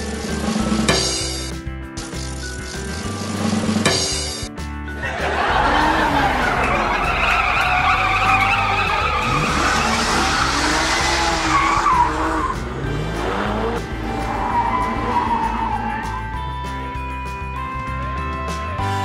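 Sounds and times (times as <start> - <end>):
background music: 0.0 - 19.0
car engine revving: 5.4 - 17.0
tyres squealing: 6.1 - 12.9, 14.0 - 16.3.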